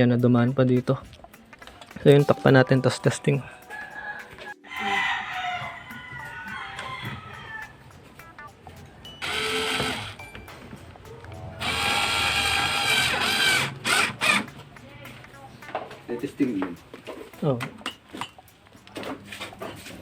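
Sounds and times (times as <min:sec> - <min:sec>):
rooster crowing: 0:03.7 - 0:08.0
power screwdriver running: 0:09.2 - 0:10.2, 0:11.6 - 0:14.5.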